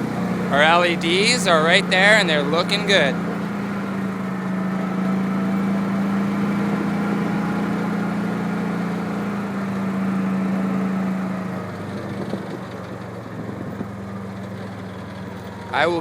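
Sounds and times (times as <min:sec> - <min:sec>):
engine idling: 0:00.0 - 0:16.0.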